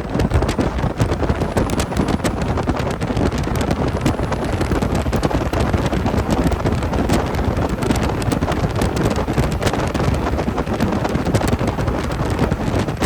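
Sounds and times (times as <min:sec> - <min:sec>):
road noise: 0:00.0 - 0:13.0
small rattles and ticks: 0:00.0 - 0:13.0
truck engine rumble: 0:00.0 - 0:13.0.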